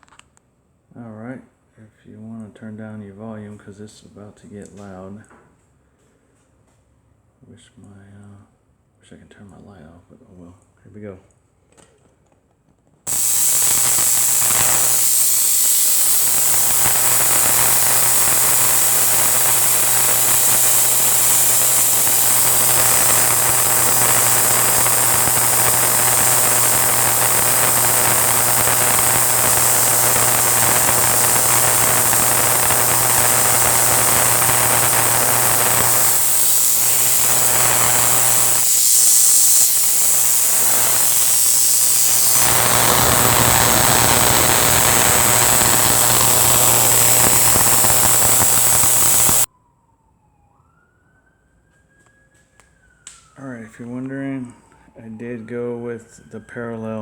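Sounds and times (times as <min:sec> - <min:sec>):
mains hum: 0:13.1 - 0:49.5
tesla coil hissing buzz: 0:13.1 - 0:49.5.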